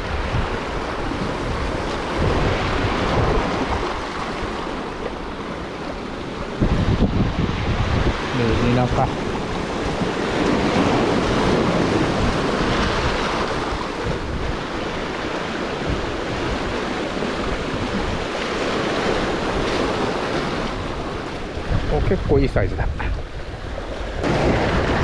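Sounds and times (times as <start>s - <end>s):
wind on microphone: 0.0s - 25.0s
sea splashing against rocks: 23.7s - 25.0s.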